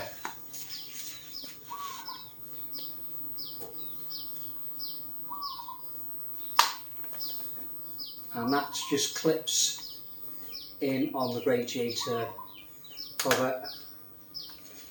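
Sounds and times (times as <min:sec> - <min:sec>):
small birds chirping: 0:00.0 - 0:14.9
sharp click: 0:06.6 - 0:06.8, 0:13.2 - 0:13.5.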